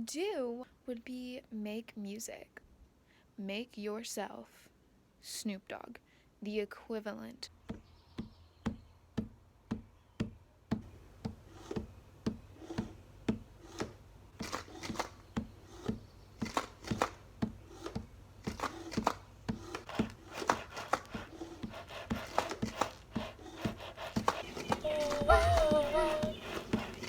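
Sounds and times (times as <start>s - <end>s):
percussive beat with low thumps: 24.9s - 26.4s.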